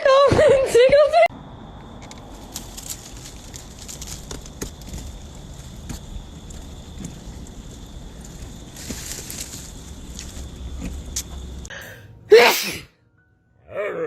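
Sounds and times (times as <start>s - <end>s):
loud sneeze: 12.3s - 12.9s.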